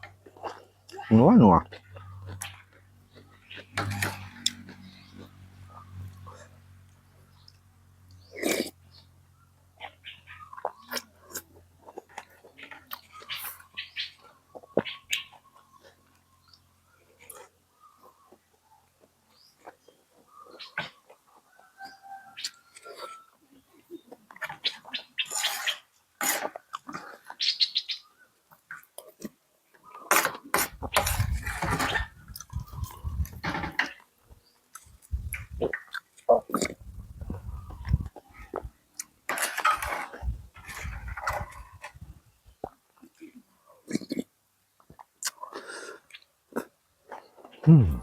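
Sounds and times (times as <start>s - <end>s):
person chewing and slurping: 30.5s - 33.4s, 34.7s - 38.7s
wet mouth clicks: 34.8s - 39.1s, 44.9s - 45.4s.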